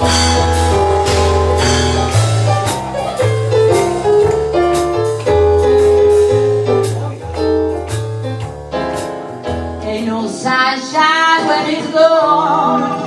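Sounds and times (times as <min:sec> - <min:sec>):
moving bass line: 0:00.0 - 0:10.1
steady drum beat: 0:00.0 - 0:10.1
sustained piano notes: 0:00.0 - 0:10.3.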